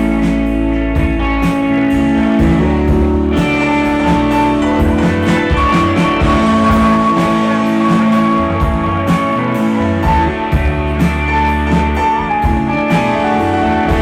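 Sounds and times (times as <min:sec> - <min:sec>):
guitar chords: 0:00.0 - 0:14.0
drum hits: 0:02.0 - 0:10.2.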